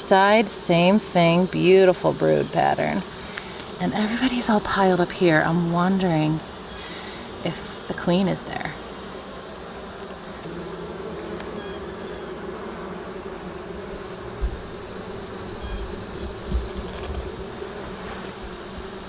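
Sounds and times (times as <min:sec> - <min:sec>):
bees buzzing: 0:00.0 - 0:19.0
low thumps: 0:13.9 - 0:19.0.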